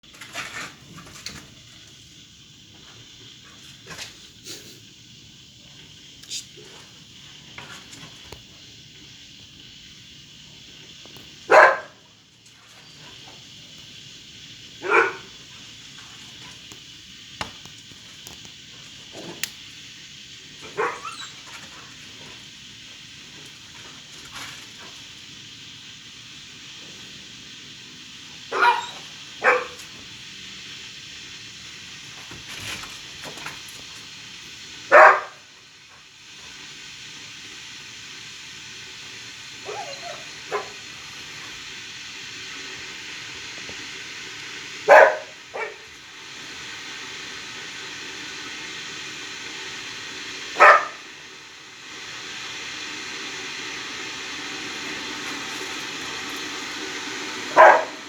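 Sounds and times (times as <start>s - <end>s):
steady background hiss: 0.1s - 58.0s
dog barking: 11.5s - 12.0s, 14.8s - 15.3s, 20.6s - 21.4s, 28.5s - 29.8s, 34.9s - 35.4s, 39.6s - 40.8s, 44.8s - 45.9s, 50.6s - 51.0s, 57.5s - 58.0s.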